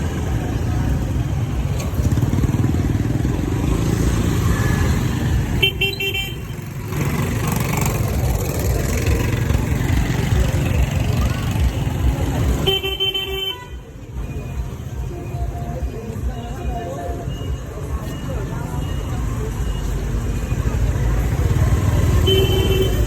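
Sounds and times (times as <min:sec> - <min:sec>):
motorbike engines rumbling: 0:00.0 - 0:23.0
horn honk: 0:05.5 - 0:06.6, 0:12.5 - 0:14.0, 0:22.1 - 0:23.0.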